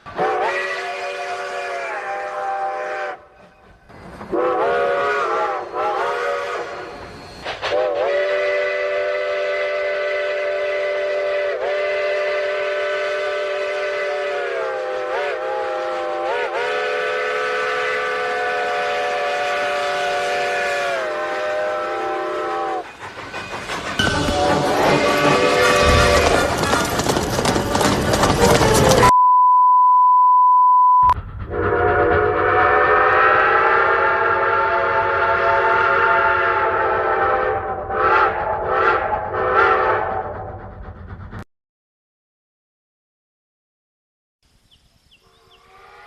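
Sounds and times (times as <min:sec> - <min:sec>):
steam train chime whistle: 0:04.3 - 0:22.9, 0:24.0 - 0:26.5.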